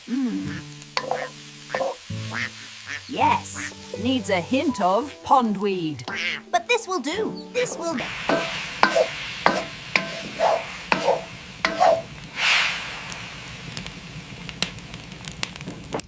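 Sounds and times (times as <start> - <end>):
utensils clinking in a dish: 1.0 - 2.0
utensil swish: 8.0 - 13.6.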